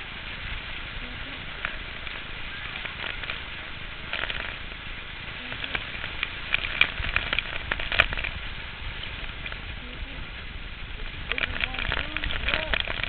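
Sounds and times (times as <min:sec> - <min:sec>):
hail and rain pelting: 0:00.0 - 0:13.0
sharp hail hits: 0:00.0 - 0:13.0.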